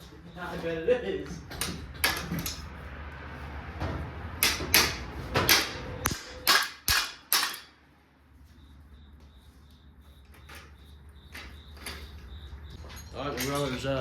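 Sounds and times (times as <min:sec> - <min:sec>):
sharp knocks on metal: 0:03.8 - 0:07.7.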